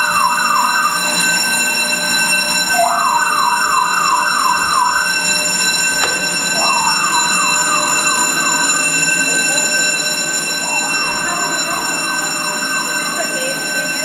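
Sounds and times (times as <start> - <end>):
fire alarm tone: 0.0 - 14.0
rising alarm whoops: 6.0 - 9.5.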